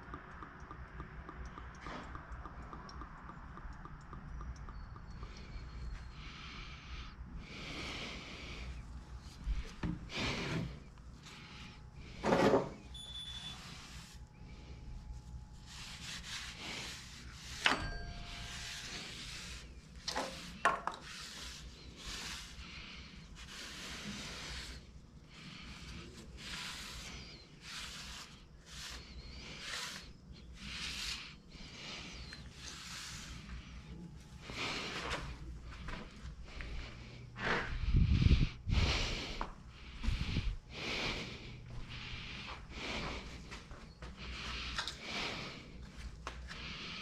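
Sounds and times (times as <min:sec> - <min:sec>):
rubbing strokes: 0:13.4 - 0:33.9.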